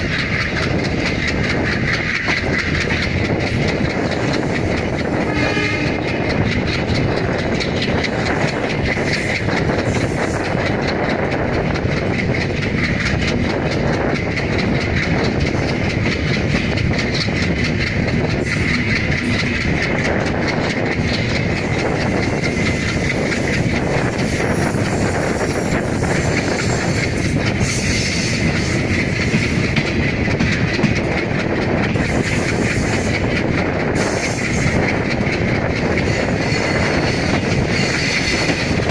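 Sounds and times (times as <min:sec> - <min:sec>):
diesel locomotive accelerating: 0:00.0 - 0:38.9
train wheels clacking on rails: 0:00.0 - 0:38.9.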